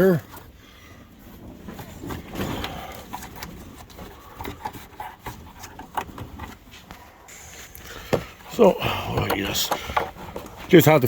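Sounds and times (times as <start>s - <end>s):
handling clicks and knocks: 1.5s - 7.2s, 7.8s - 11.0s.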